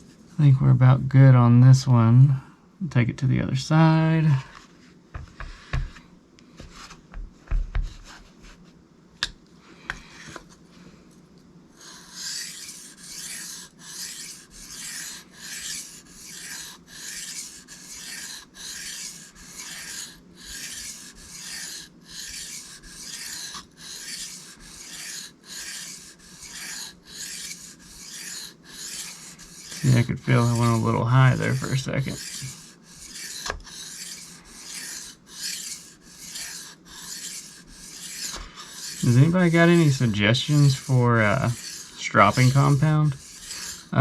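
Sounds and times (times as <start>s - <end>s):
knife rasping on whetstone: 11.8s - 44.0s.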